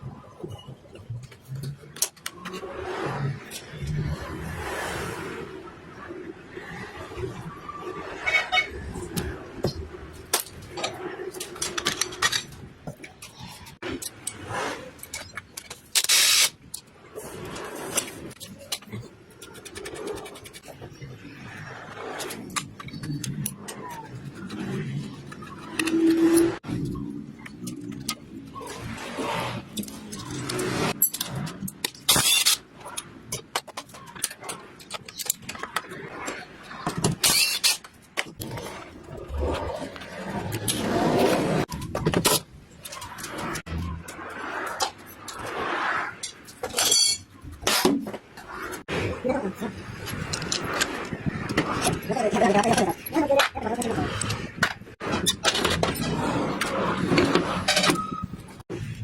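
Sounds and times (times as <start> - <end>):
metal parts clicking and clinking: 9.6 - 16.9, 29.7 - 38.5, 46.2 - 47.9
metal parts clinking on workbench: 46.6 - 47.2.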